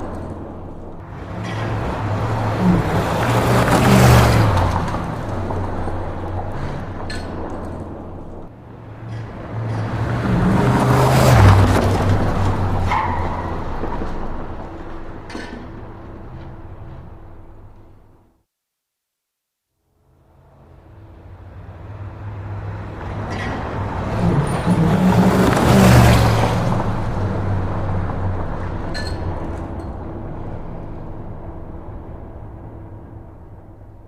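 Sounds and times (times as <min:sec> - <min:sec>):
car driving past at speed: 0:01.0 - 0:07.1, 0:08.6 - 0:17.4, 0:20.6 - 0:31.2.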